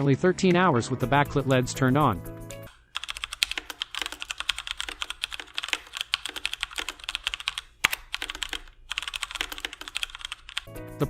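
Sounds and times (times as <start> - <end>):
fast mechanical keyboard typing: 2.7 - 10.7.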